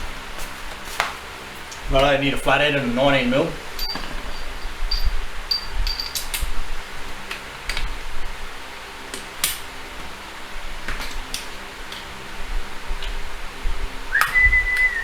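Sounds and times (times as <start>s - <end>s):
faint steady hum: 0.0s - 15.0s
metal hand tools clinking: 3.8s - 6.5s.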